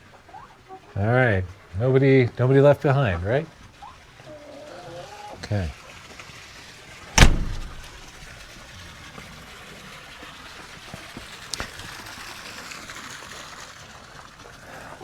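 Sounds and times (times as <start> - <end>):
running water trickling: 0.0 - 15.0
sharp click: 7.2 - 8.2.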